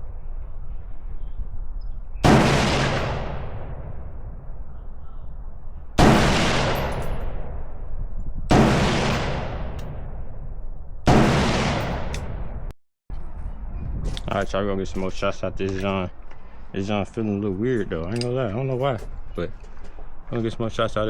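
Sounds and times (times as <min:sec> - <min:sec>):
gunshots with echo: 0:02.2 - 0:04.5, 0:06.0 - 0:10.5, 0:11.1 - 0:12.7.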